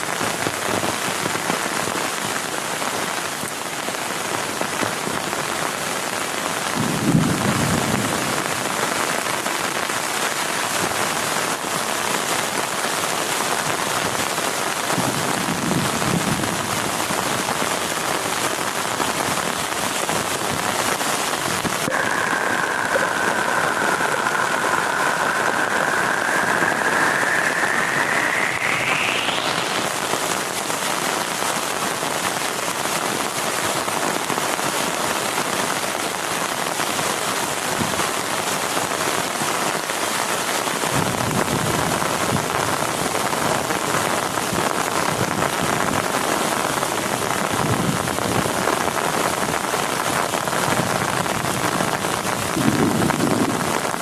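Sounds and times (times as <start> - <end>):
heavy rain on a tent: 0.0 - 28.4, 30.0 - 54.0
thin high tone rising in pitch: 21.8 - 30.6.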